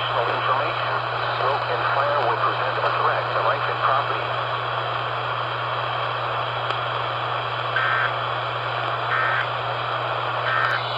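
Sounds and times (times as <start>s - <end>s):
radio static and hiss: 0.0s - 10.9s
steady low hum: 0.0s - 10.9s
high warbling data bursts: 7.8s - 8.1s, 9.1s - 9.5s.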